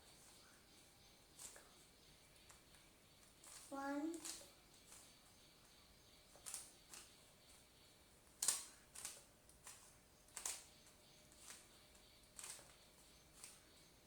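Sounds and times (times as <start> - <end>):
puzzle cube layers clicking: 8.4 - 10.8.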